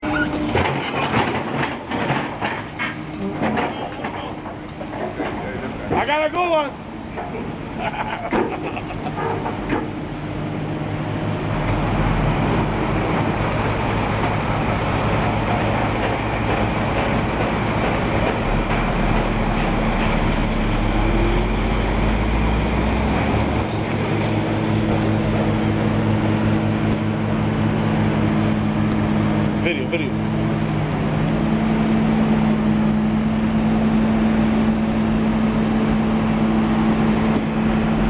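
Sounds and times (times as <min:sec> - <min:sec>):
vehicle engine humming: 0:00.0 - 0:38.0
deep rumble: 0:06.7 - 0:38.0.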